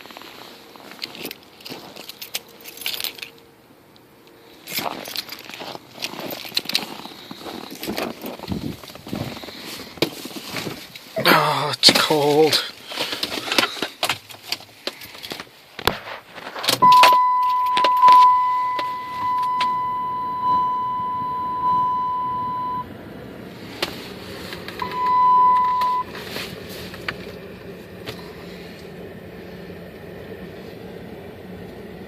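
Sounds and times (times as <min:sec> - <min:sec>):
car engine starting and idling: 0:00.1 - 0:32.0
keys rattling: 0:00.8 - 0:03.5, 0:04.6 - 0:09.0
ignition clicks: 0:16.6 - 0:22.9, 0:23.7 - 0:27.4
electronic warning chime: 0:16.8 - 0:22.9, 0:24.8 - 0:26.1.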